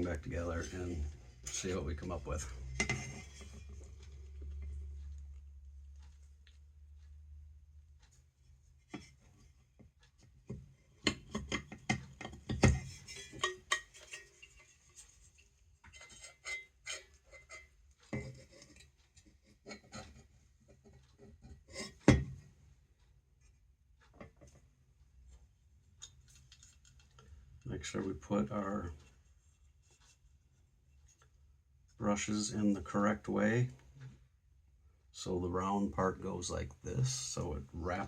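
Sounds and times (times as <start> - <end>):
metal parts clicking and scraping: 11.3 - 18.8.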